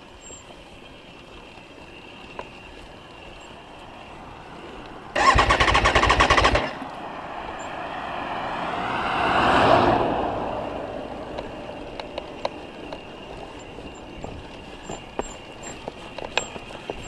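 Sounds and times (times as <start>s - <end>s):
motor vehicle engine: 0.0s - 17.0s
engine burst of rapid pulses: 5.1s - 6.9s.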